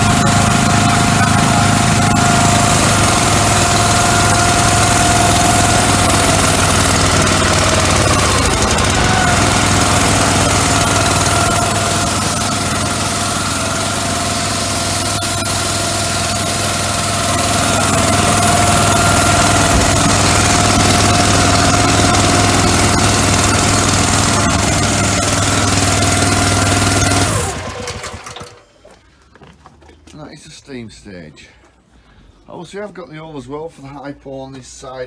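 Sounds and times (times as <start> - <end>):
pressure washer engine running: 0.0 - 28.6.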